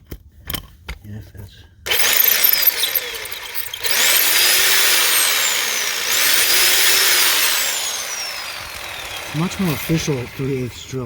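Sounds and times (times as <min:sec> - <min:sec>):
hammer drill boring into concrete: 0:01.9 - 0:11.0.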